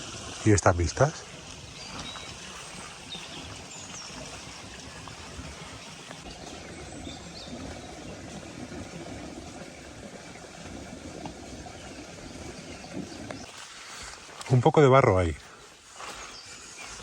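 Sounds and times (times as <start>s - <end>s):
stream running: 0.0s - 17.0s.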